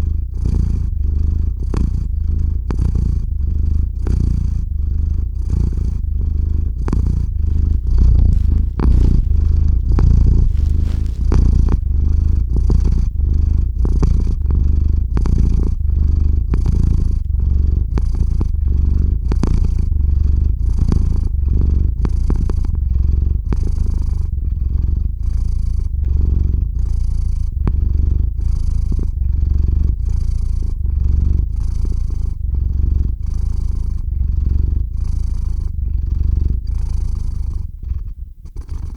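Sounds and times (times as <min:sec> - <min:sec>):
cat purring: 0:00.0 - 0:38.9.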